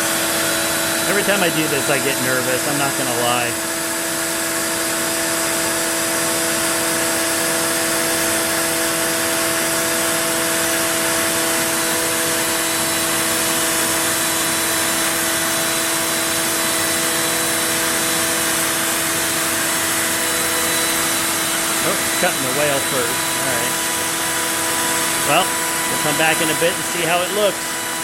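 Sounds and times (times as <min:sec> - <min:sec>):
router spindle whine: 0:00.0 - 0:28.0
vacuum air rush: 0:19.4 - 0:28.0.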